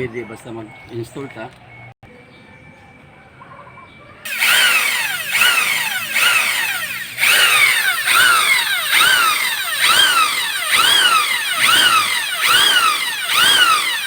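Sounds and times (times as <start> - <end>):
electric drill motor whining: 4.3 - 14.0.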